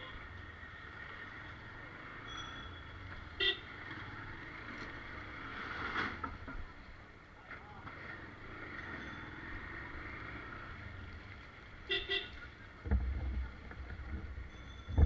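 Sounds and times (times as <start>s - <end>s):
street traffic: 0.0s - 15.0s
vehicle horn toot: 3.4s - 3.8s, 11.9s - 12.4s.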